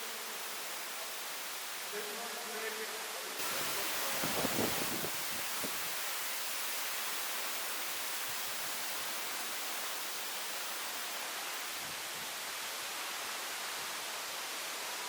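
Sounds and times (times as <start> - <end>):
waterfall rushing: 0.0 - 2.5, 3.3 - 15.0.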